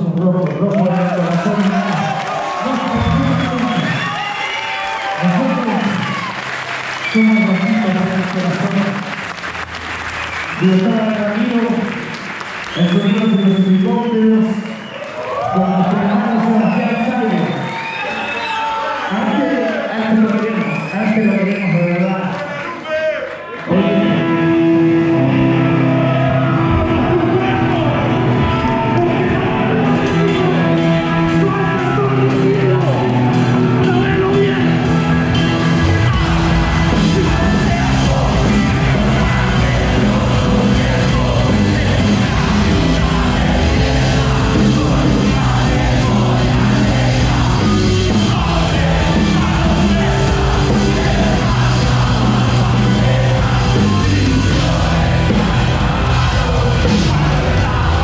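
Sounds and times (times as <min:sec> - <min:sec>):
live rock band playing: 0:23.7 - 0:58.0
shouted singing: 0:25.2 - 0:58.0.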